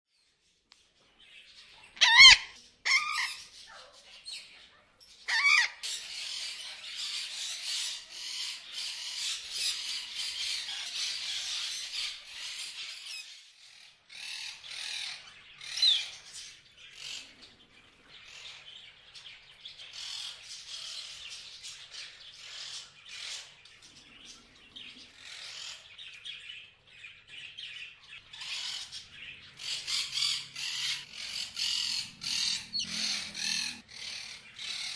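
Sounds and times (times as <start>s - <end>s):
parrots chirping and chattering: 1.2s - 34.9s
loud wavering squawks: 2.0s - 3.5s, 5.3s - 5.9s, 28.3s - 34.9s.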